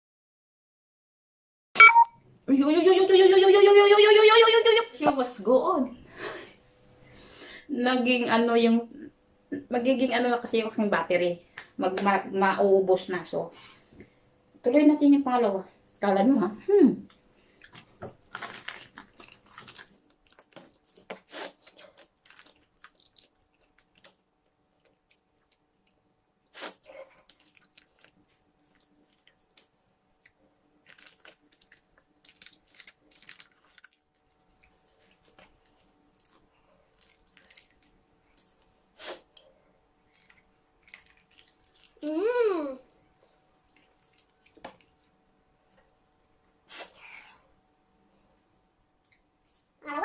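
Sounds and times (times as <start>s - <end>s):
person biting and chewing: 17.6s - 25.6s, 26.6s - 39.4s, 40.0s - 42.1s.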